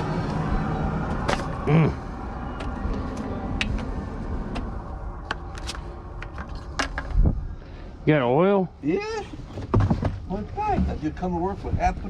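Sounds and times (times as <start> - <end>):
diesel engine running: 0.0 - 6.8
clanks and knocks: 9.4 - 11.3.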